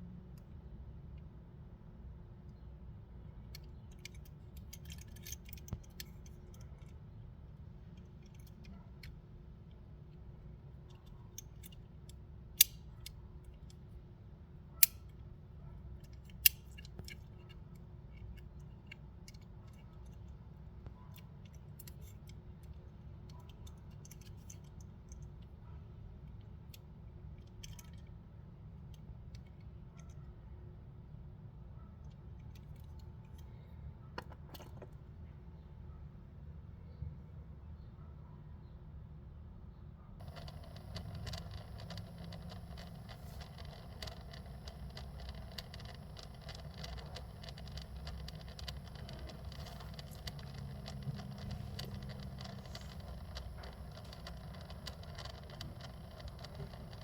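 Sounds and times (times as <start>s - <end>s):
steady low hum: 40.2s - 57.0s.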